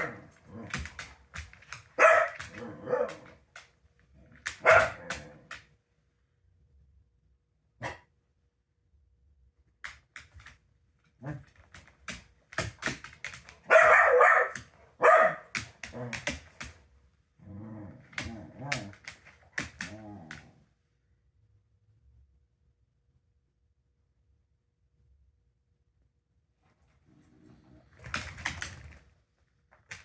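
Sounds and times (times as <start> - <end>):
dog barking: 0.0 - 0.4, 2.0 - 3.3, 4.6 - 5.3, 7.8 - 8.1, 13.6 - 16.2
dog whining yelps: 13.7 - 15.4.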